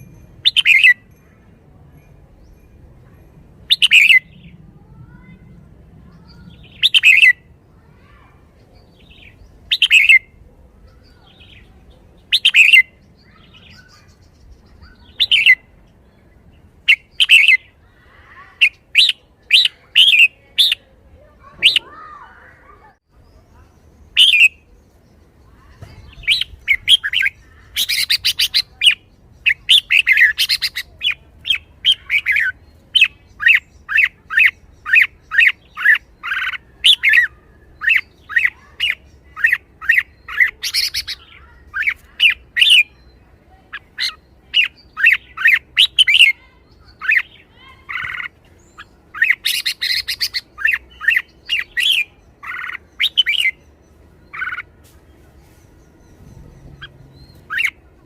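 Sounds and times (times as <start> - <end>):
bird chattering bursts: 0.4 - 1.0, 3.7 - 4.4, 6.2 - 7.4, 9.0 - 10.3, 12.2 - 15.6, 16.9 - 17.7, 24.1 - 24.7, 25.7 - 43.0, 43.7 - 53.6, 56.1 - 58.0
bird singing short sharp phrases: 1.9 - 58.0.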